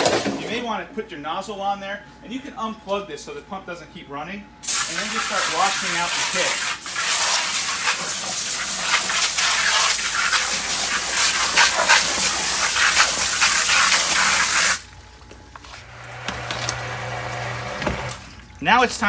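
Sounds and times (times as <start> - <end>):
hose water splashing: 4.7 - 19.0.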